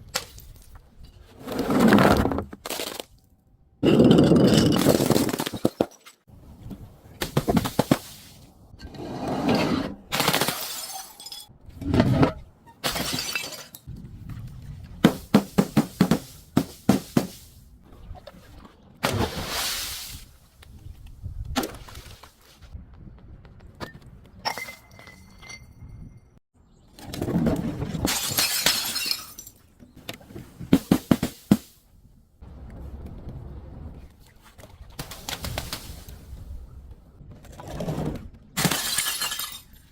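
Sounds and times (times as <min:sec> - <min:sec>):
glass smashing and crunching: 0:28.1 - 0:29.6, 0:38.6 - 0:39.9.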